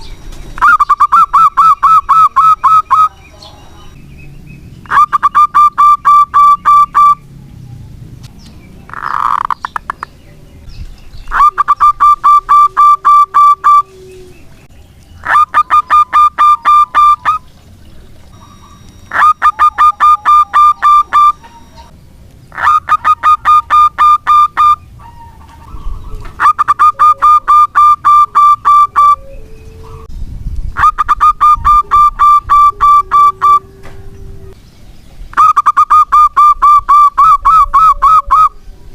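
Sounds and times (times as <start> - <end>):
dove cooing song: 0.0 - 4.0, 4.8 - 7.9, 11.2 - 30.1, 30.8 - 34.6, 35.3 - 38.9.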